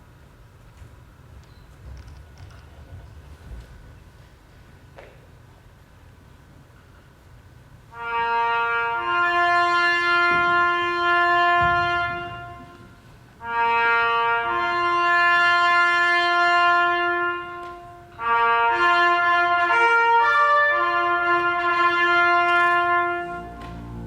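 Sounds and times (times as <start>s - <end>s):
solo brass horn call: 7.9s - 24.0s.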